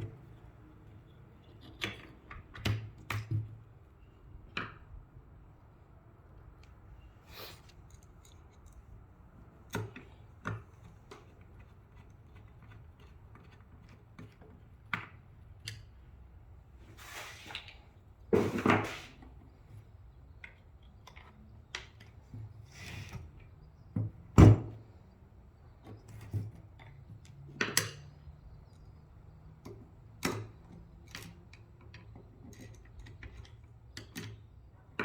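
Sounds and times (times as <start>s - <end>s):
parts clicking and knocking: 7.6s - 16.0s, 25.8s - 35.0s.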